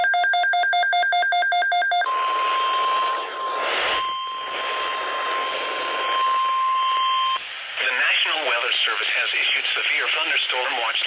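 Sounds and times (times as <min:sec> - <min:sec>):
weather radio alarm tone: 0:00.0 - 0:07.4
radio static: 0:02.1 - 0:11.0.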